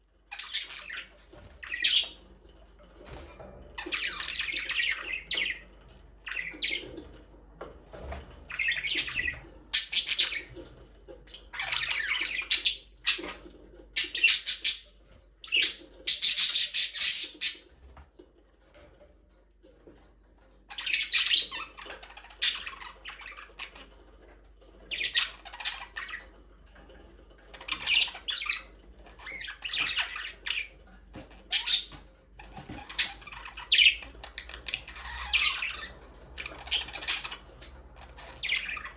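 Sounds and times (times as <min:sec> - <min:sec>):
budgerigars chattering and squawking: 0:00.3 - 0:02.2, 0:03.8 - 0:07.0, 0:08.0 - 0:17.8, 0:20.7 - 0:24.0, 0:24.9 - 0:26.3, 0:27.5 - 0:38.9.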